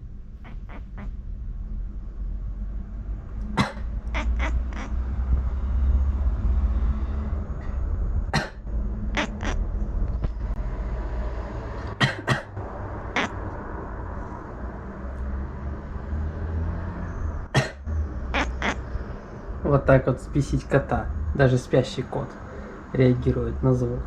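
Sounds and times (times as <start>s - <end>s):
cat grumbling: 0.4s - 1.1s, 3.6s - 5.1s, 8.4s - 9.6s, 13.1s - 13.4s, 18.3s - 18.8s
person coughing: 3.6s - 3.9s, 8.4s - 8.6s, 12.0s - 12.5s, 17.6s - 17.8s.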